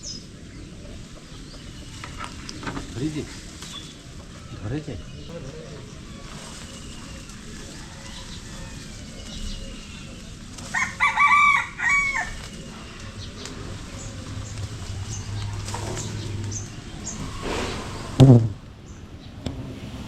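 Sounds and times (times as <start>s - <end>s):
rooster crowing: 7.6s - 9.4s, 10.7s - 12.8s
loud low thud: 17.5s - 18.6s.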